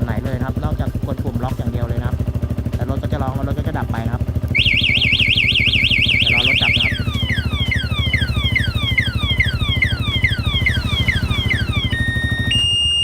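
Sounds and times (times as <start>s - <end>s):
motorcycle engine idling: 0.0s - 12.7s
motorcycle alarm siren: 4.5s - 13.0s.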